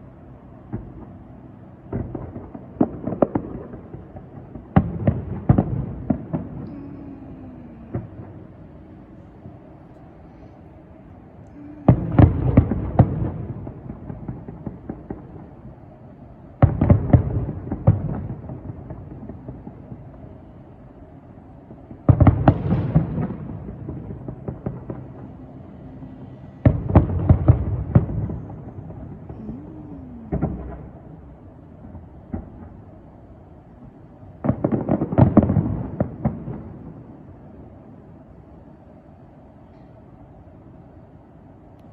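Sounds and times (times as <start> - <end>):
steady low hum: 0.0 - 41.9
fireworks bursting: 1.9 - 9.8, 11.5 - 15.6, 26.6 - 32.8.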